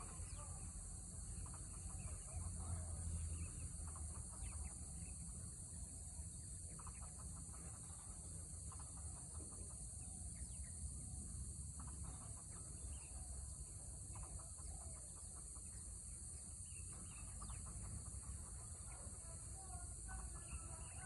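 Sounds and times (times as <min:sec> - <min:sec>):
faint bird calls: 0:00.0 - 0:21.0.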